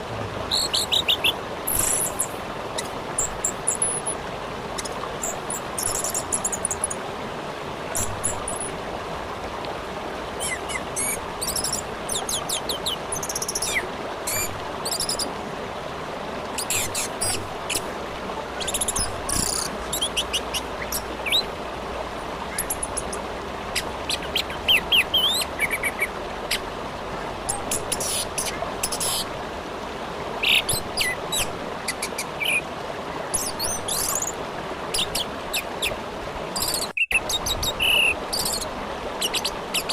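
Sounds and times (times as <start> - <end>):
river rushing: 0.0 - 39.9.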